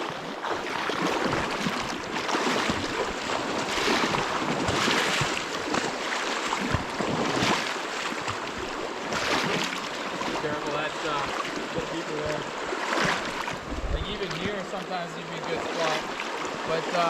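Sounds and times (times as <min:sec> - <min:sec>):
river current rushing: 0:00.0 - 0:17.0
wind buffeting microphone: 0:13.6 - 0:14.6.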